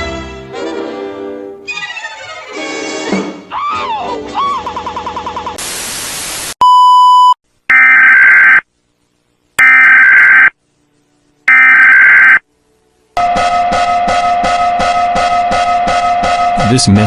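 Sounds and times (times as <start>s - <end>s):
static hiss: 5.5s - 6.6s
harsh digital screech: 9.6s - 10.5s, 11.5s - 12.4s
pulsing electronic beeping: 9.6s - 10.5s, 11.5s - 12.4s
short steady beep: 9.6s - 10.5s, 11.5s - 12.4s.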